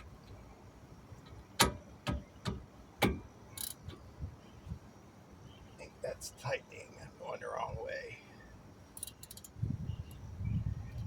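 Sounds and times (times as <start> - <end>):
ratchet wrench clicking: 3.6 - 4.0, 9.0 - 9.6.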